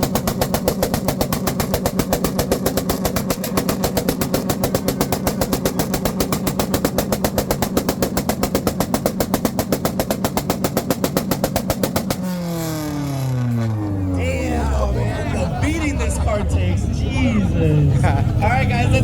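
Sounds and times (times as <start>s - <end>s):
car engine on rev limiter: 0.0s - 15.9s
exhaust popping: 0.0s - 19.0s.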